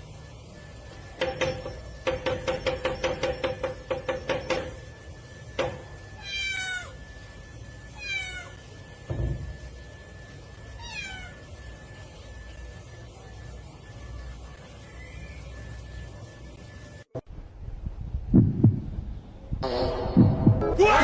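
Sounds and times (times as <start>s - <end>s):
cat meowing: 6.2s - 7.0s, 8.0s - 8.6s, 10.8s - 11.4s.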